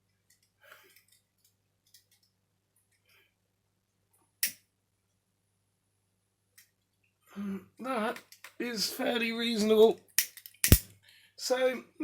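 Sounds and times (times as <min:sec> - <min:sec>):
sharp click: 0:10.6 - 0:10.8.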